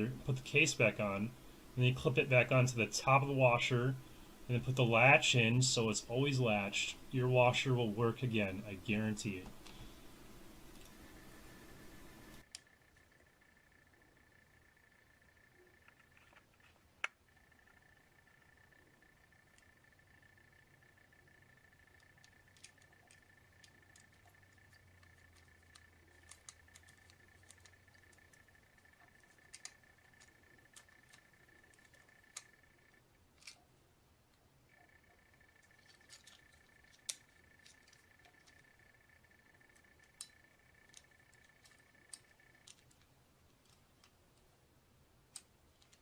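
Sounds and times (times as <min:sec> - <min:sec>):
faint high whine: 0:00.0 - 0:46.0
faint high-pitched hum: 0:00.0 - 0:46.0
small clicks and taps: 0:21.9 - 0:32.7, 0:33.4 - 0:33.6, 0:39.4 - 0:44.5.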